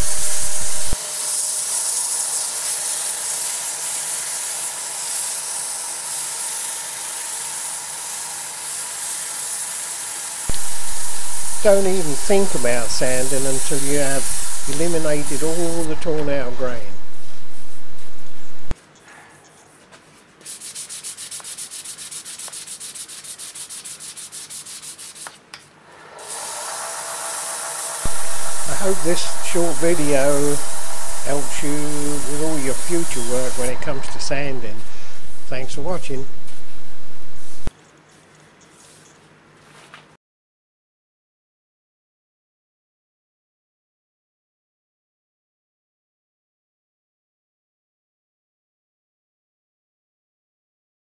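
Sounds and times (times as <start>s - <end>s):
high-pitched hiss: 0.0s - 4.0s, 10.5s - 18.7s, 25.9s - 37.7s
sandpaper rasping on spinning wood: 0.0s - 16.6s, 20.4s - 25.4s, 26.2s - 35.1s.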